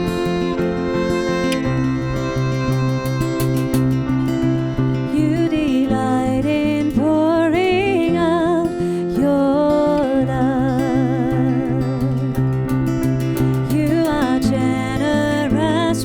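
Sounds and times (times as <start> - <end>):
sliding lead melody with vibrato: 0.0 - 8.9
acoustic guitar: 0.0 - 16.0.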